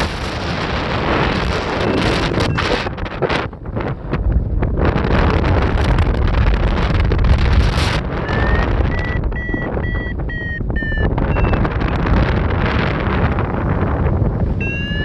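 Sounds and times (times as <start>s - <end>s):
strong wind buffeting microphone: 0.0s - 15.0s
high-pitched electronic beeps: 8.2s - 12.0s, 14.6s - 15.0s.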